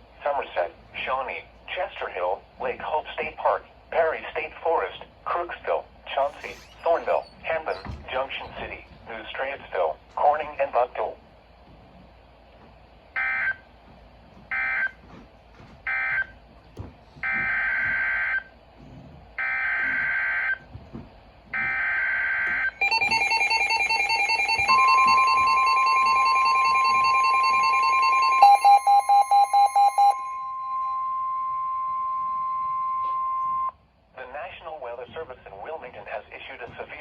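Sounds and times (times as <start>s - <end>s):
steady warning alarm tone: 12.6s - 15.2s, 15.8s - 16.4s, 17.2s - 18.6s, 19.4s - 33.8s
beeping alert tones: 22.8s - 31.1s
quick beeps: 22.8s - 33.7s.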